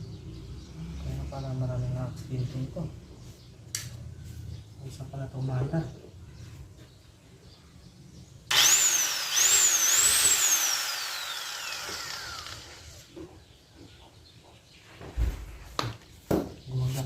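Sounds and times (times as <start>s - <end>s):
power tool motor whining: 8.5s - 13.2s.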